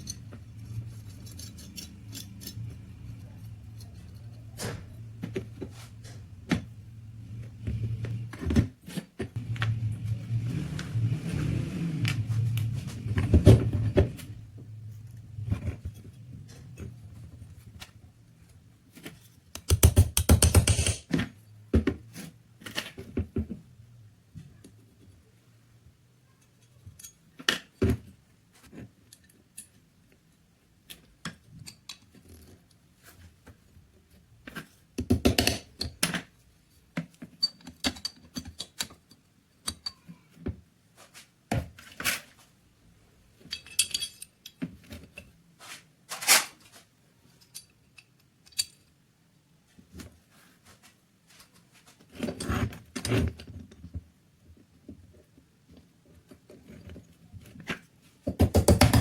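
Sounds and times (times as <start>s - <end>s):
metal parts and tools clinking: 0.0s - 5.1s, 43.4s - 45.3s, 47.3s - 48.9s.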